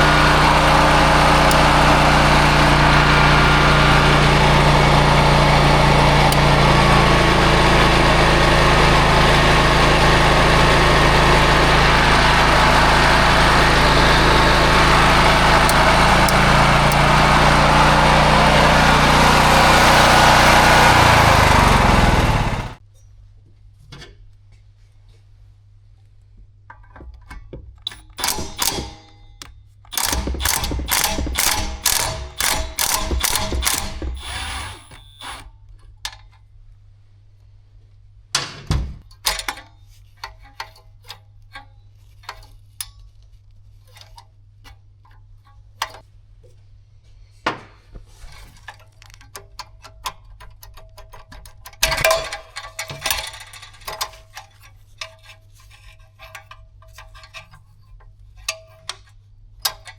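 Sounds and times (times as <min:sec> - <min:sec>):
ratchet wrench clicking: 0:27.9 - 0:29.0, 0:29.9 - 0:35.4.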